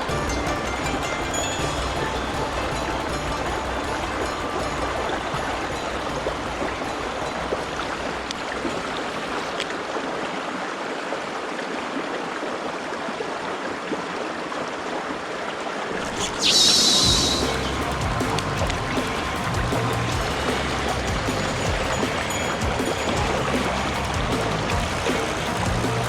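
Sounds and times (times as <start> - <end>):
stream water rushing: 0.0 - 26.0
sharp bright hiss: 16.1 - 18.4.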